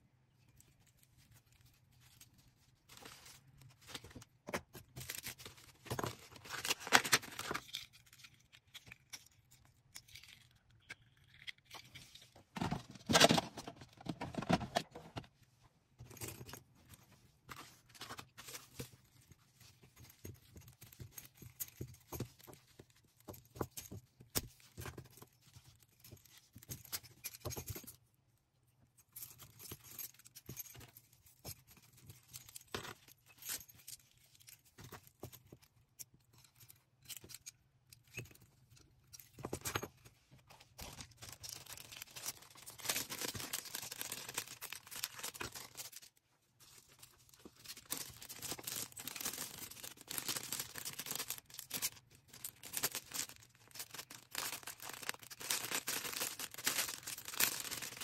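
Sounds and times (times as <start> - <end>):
plastic packaging rustling and tearing: 4.9 - 8.2, 40.8 - 46.1, 46.7 - 58.0.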